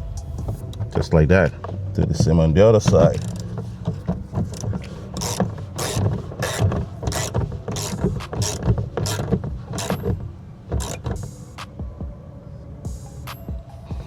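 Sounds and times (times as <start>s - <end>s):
ratchet wrench clicking: 3.0s - 11.4s.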